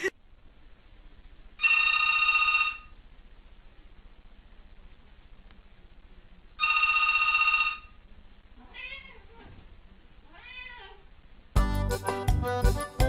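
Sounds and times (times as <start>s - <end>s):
telephone ringing: 1.6s - 2.9s, 6.6s - 8.0s
cat meowing: 8.6s - 9.5s, 10.3s - 11.1s.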